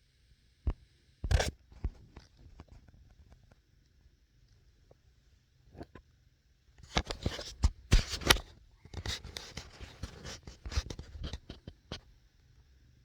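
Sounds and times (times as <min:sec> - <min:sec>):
scratching and rustling: 0:06.8 - 0:12.0.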